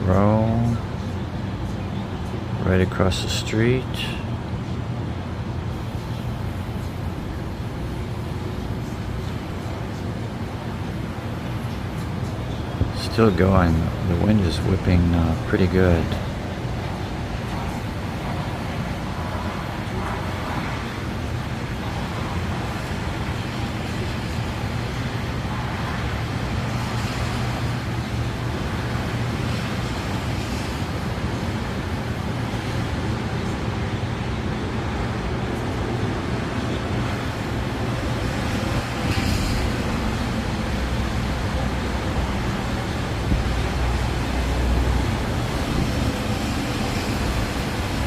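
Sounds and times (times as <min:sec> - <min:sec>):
strong wind on microphone: 0:34.6 - 0:48.0.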